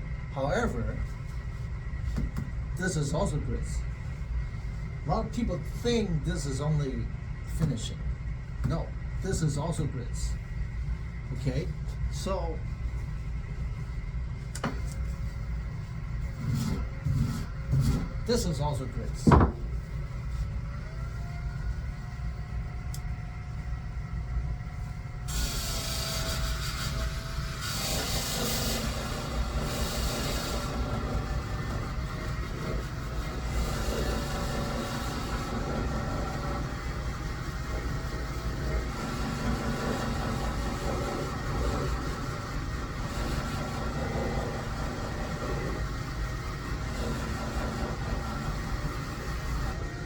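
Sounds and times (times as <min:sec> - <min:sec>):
sharpening machine humming: 0:14.6 - 0:50.0
blade grinding hiss: 0:25.3 - 0:30.9.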